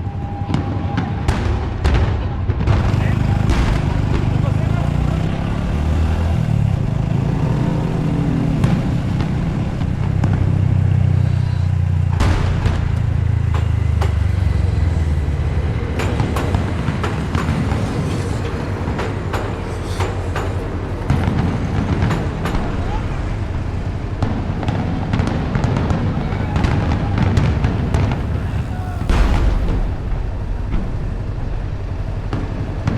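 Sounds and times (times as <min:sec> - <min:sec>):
motorcycle engine droning: 0:02.8 - 0:32.9.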